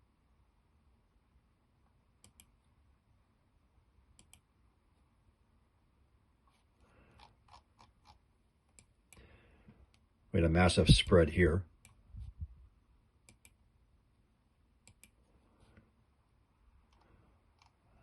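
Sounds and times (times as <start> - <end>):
computer mouse clicks: 2.2 - 2.6, 4.1 - 4.5, 7.1 - 9.2, 13.2 - 13.6, 14.8 - 15.2, 16.9 - 17.8.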